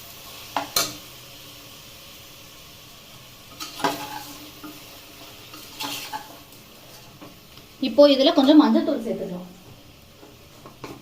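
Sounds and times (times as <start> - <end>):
onions sizzling in oil: 0.0 - 11.0
spoon scraping a pot: 3.5 - 4.8, 5.4 - 7.1.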